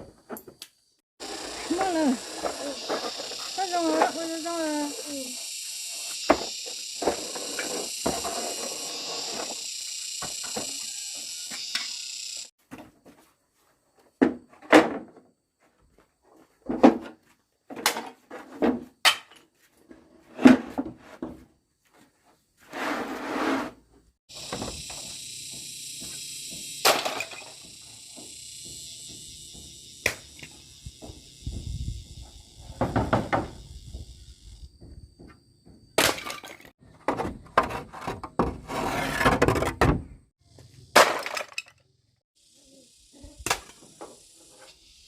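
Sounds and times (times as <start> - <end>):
knocks and thuds: 32.7 - 34.2.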